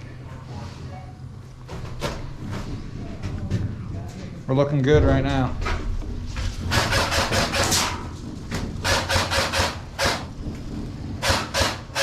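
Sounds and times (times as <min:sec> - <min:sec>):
rustling and scraping: 0:05.5 - 0:06.8.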